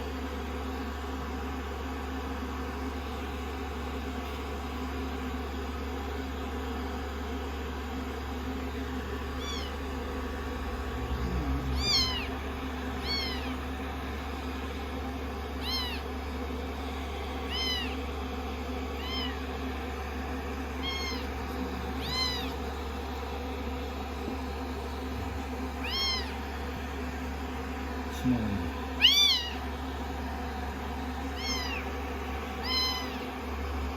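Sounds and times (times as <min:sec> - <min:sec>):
steady low hum: 0:00.0 - 0:33.9
kitten mewing: 0:09.3 - 0:09.9, 0:10.8 - 0:14.1, 0:15.5 - 0:16.4, 0:17.4 - 0:19.6, 0:20.4 - 0:23.2, 0:24.2 - 0:27.1, 0:28.2 - 0:29.7, 0:31.3 - 0:32.0, 0:32.6 - 0:33.5.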